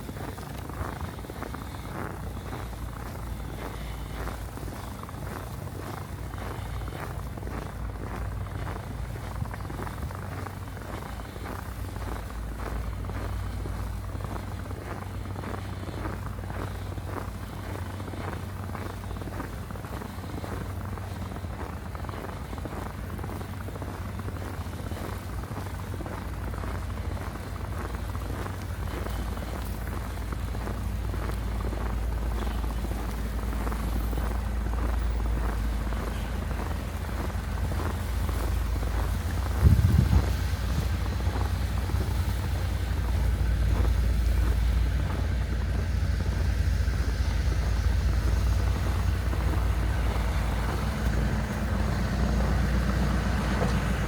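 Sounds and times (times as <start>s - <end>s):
boots crunching through snow: 0.0s - 54.0s
constant low rumble: 0.0s - 54.0s
wind buffeting microphone: 0.0s - 54.0s.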